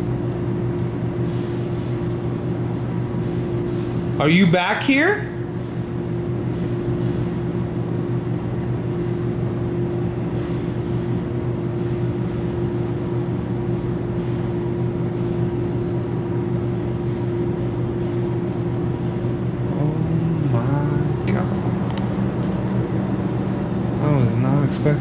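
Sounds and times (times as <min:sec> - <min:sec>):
mechanical hum with hiss: 0:00.0 - 0:25.0.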